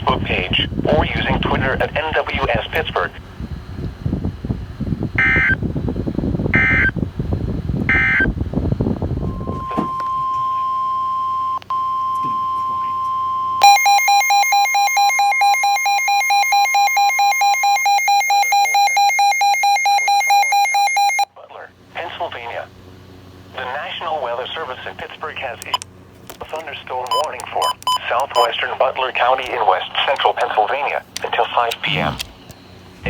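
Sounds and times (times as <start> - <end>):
radio static: 0.0 - 3.3, 21.4 - 22.7, 23.6 - 25.8, 26.4 - 32.3
fast-pulsing electronic alarm beep: 5.2 - 5.6, 6.6 - 7.0, 7.9 - 8.3, 9.2 - 21.3
screechy digital data tones: 13.6 - 21.2.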